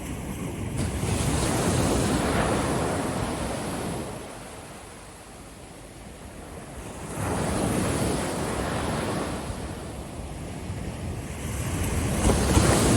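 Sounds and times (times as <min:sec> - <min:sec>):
ocean waves breaking on beach: 0:00.0 - 0:12.9.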